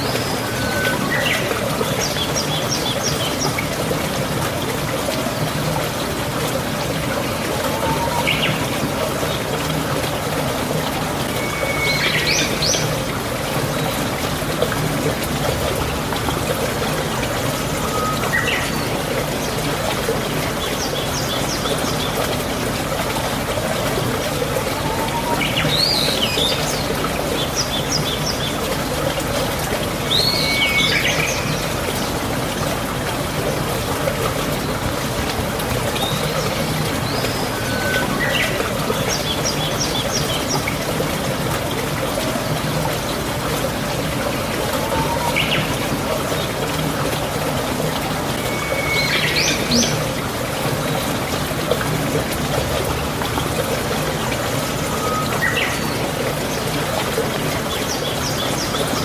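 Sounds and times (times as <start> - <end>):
trickle of running water: 0.0 - 59.0
birds whistling calls: 11.2 - 13.0, 48.4 - 50.1.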